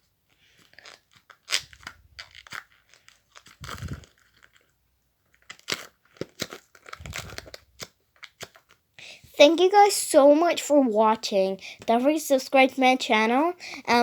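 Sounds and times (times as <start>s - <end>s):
crinkly rubbing: 0.0s - 8.8s.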